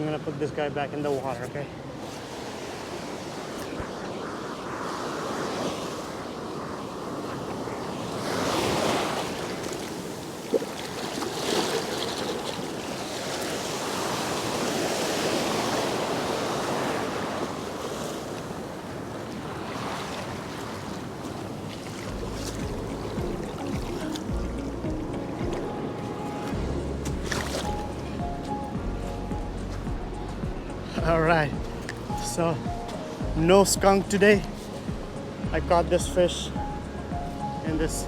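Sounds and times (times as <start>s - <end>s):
waves breaking on a beach: 0.0s - 38.0s
wind buffeting microphone: 16.0s - 38.0s.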